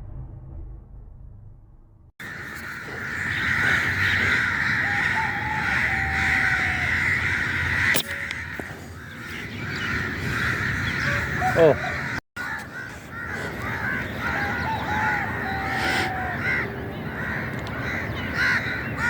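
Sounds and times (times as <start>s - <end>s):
crows cawing: 2.2s - 19.0s.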